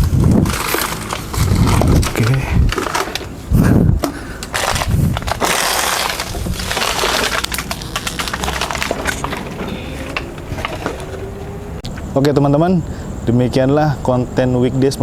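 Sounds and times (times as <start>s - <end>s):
footsteps crunching dry leaves: 0.0s - 11.8s
twigs snapping: 0.0s - 12.0s
heavy rustling: 0.0s - 12.1s.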